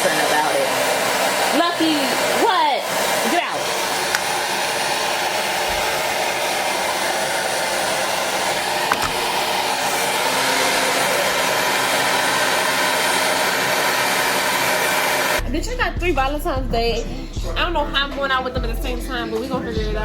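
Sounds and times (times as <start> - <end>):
hair dryer blowing: 0.0 - 15.5.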